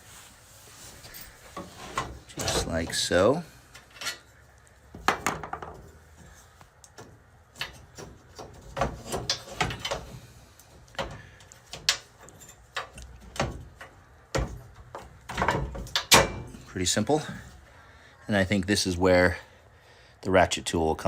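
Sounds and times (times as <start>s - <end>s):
metal frame parts clicking: 3.7s - 4.3s, 6.8s - 16.7s.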